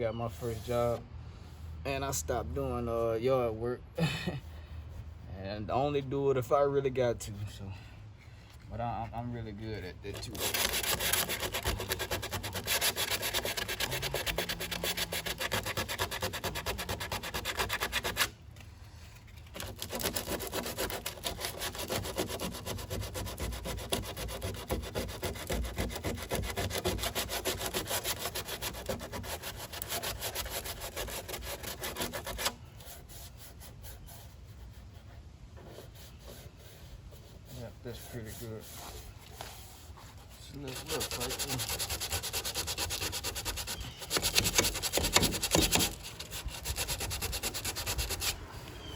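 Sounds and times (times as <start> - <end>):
sandpaper grating on filler: 10.0 - 18.4, 19.1 - 34.8, 35.7 - 48.9.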